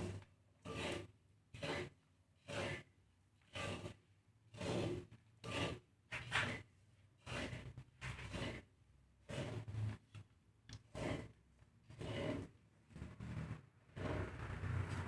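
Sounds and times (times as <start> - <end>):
spatula stirring seeds in a pan: 0.0 - 9.9, 10.7 - 12.6.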